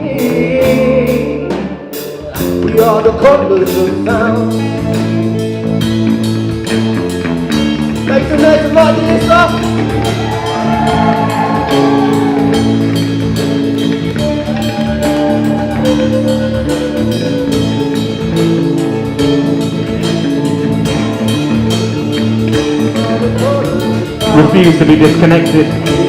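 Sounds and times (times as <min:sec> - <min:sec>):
drum kit beat: 0:00.0 - 0:26.0.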